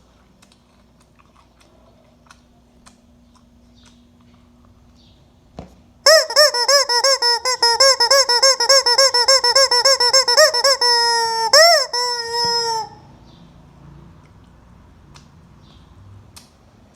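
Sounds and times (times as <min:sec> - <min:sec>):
rubber squeaky toy squealing: 0:06.1 - 0:13.0.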